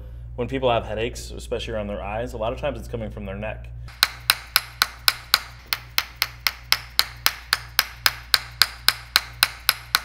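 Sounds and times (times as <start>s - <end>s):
hammer tapping rhythmically: 3.9s - 10.0s.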